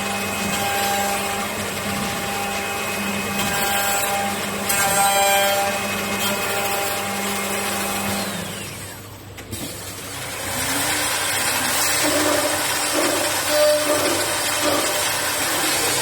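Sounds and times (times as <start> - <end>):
cutter working wood: 0.0 - 16.0
lathe motor whine: 10.1 - 16.0.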